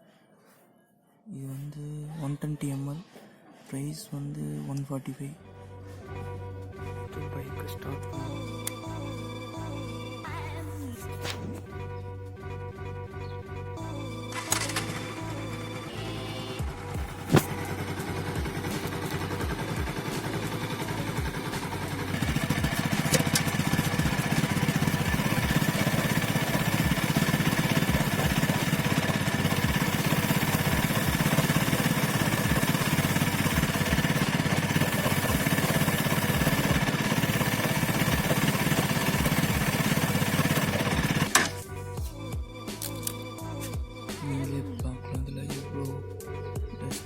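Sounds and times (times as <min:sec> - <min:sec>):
motorcycle engine running: 0:14.3 - 0:42.5.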